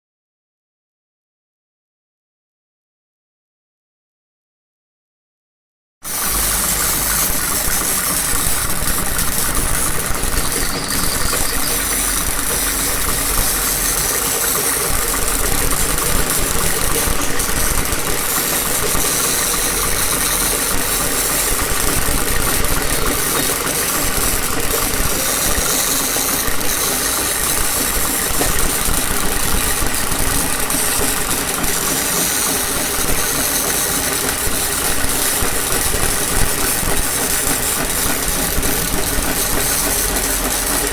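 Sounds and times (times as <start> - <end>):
machinery engine-like drone: 6.1 - 40.9.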